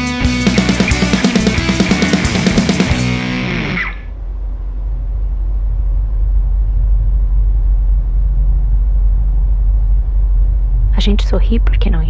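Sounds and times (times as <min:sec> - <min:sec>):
deep rumble: 0:00.0 - 0:12.0.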